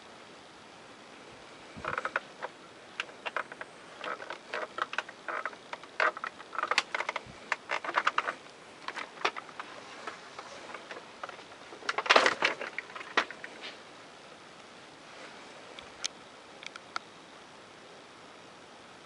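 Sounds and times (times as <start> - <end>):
clicks and clatters of handling: 1.8 - 13.8.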